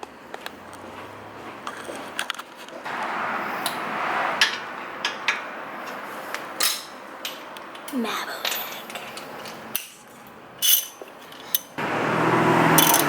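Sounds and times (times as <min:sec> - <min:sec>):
hand tools clicking and knocking: 0:06.6 - 0:11.8, 0:12.7 - 0:13.0
metal scraping: 0:12.6 - 0:13.0.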